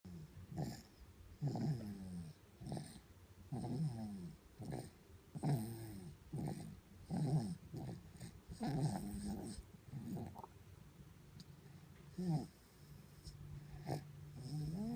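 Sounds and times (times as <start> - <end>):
baby snoring: 0.5 - 10.5, 13.8 - 14.9.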